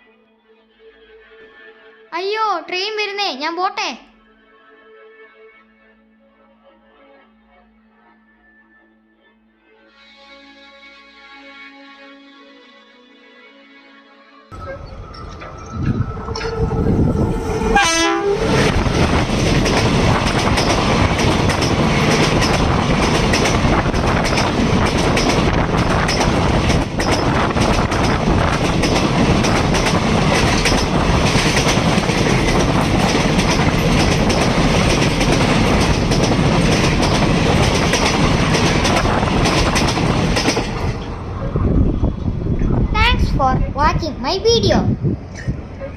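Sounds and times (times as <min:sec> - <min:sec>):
train wheels rattling on rails: 0:14.6 - 0:41.9
train horn: 0:15.9 - 0:19.0.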